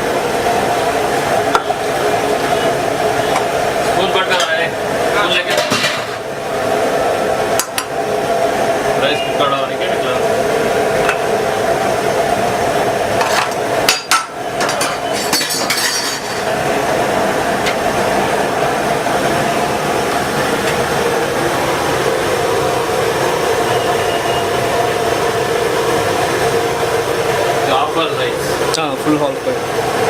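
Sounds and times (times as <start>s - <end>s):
metal utensils clinking on pots: 5.4s - 6.2s, 13.2s - 16.5s.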